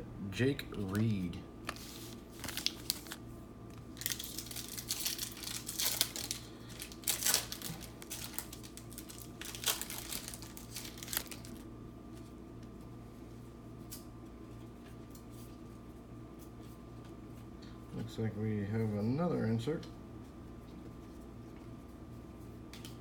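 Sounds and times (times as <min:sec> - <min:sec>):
foil wrapper crinkling and tearing: 0:00.8 - 0:11.7.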